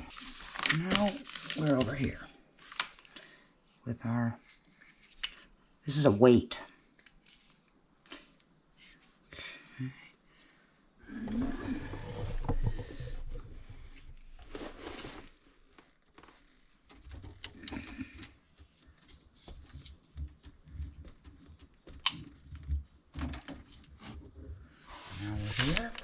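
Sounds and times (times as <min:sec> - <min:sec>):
rustling: 0:00.0 - 0:03.2, 0:11.2 - 0:17.4, 0:18.2 - 0:26.0
small clicks and knocks of parts: 0:15.8 - 0:23.9.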